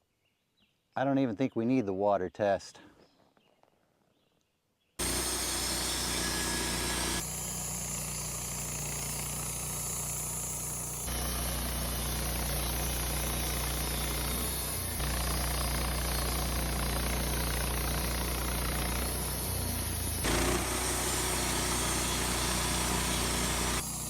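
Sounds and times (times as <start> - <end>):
sawmill engine running: 5.0 - 24.0.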